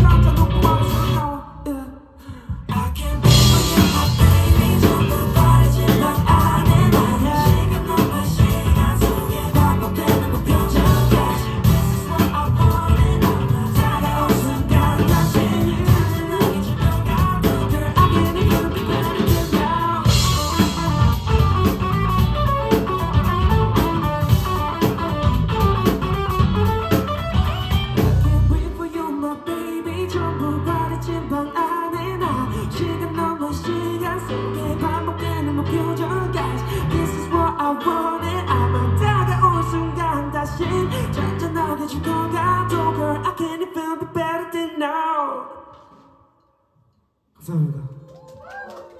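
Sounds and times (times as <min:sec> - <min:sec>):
live rock band playing: 0:00.0 - 0:01.2, 0:03.2 - 0:29.1
person singing: 0:00.0 - 0:22.0, 0:27.0 - 0:45.6.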